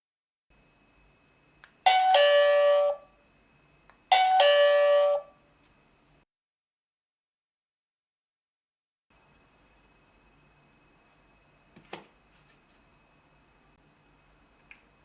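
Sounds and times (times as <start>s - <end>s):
electronic ding-dong chime: 1.9s - 3.1s, 4.1s - 5.3s.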